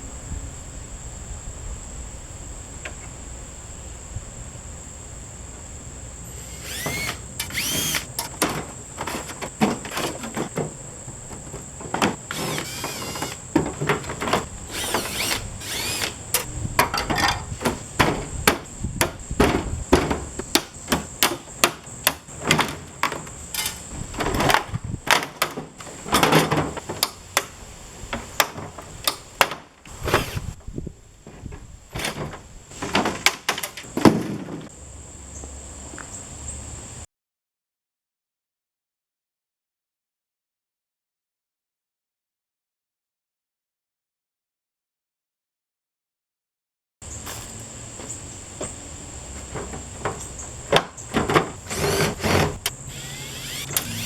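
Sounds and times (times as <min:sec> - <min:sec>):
metal parts clanking and scraping: 0:06.4 - 0:27.2, 0:31.3 - 0:34.7, 0:49.5 - 0:54.0.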